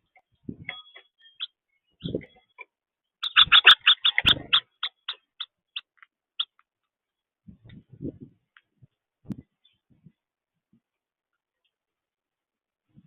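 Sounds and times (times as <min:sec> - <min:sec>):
finch chirping: 0:00.1 - 0:02.6, 0:03.2 - 0:06.6.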